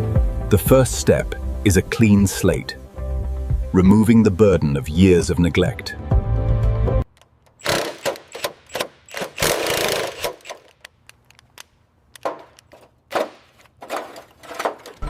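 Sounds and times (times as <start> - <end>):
workshop tool noise: 7.2 - 15.0
scraping: 9.6 - 15.0.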